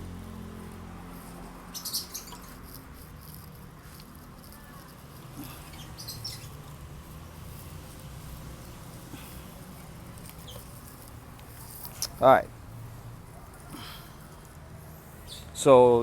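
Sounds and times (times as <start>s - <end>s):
small metallic clicks and scrapes: 1.1s - 6.8s, 9.7s - 12.3s.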